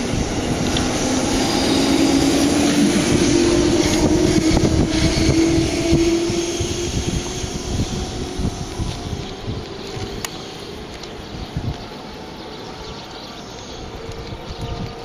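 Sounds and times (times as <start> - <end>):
freight train rumbling past: 0.0 - 10.8
hum rising in pitch: 0.0 - 15.0.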